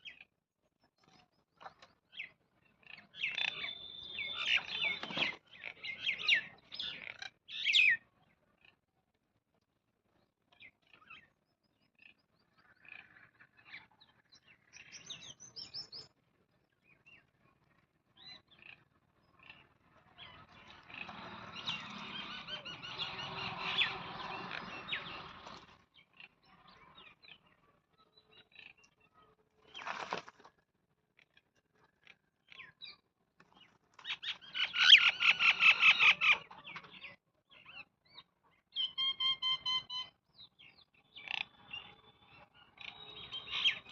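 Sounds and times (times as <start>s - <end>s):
birds chirping: 0.0s - 8.0s, 10.2s - 29.9s, 32.4s - 43.9s
birds chattering calls: 1.6s - 8.0s, 18.2s - 27.6s, 33.6s - 42.0s.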